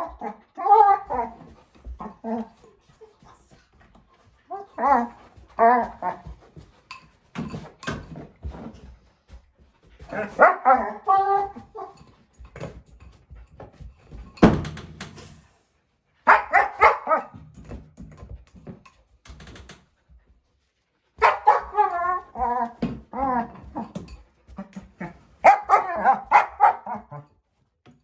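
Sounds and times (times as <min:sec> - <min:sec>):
puppy barking and whining: 0:00.0 - 0:02.5, 0:10.1 - 0:12.0, 0:21.2 - 0:23.9, 0:25.4 - 0:27.2.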